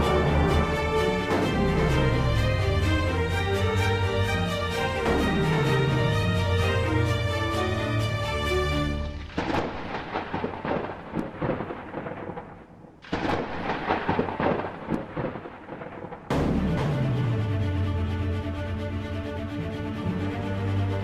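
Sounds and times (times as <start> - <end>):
music: 0.0 - 9.4, 16.3 - 21.0
crackling thunderclaps: 9.1 - 17.4.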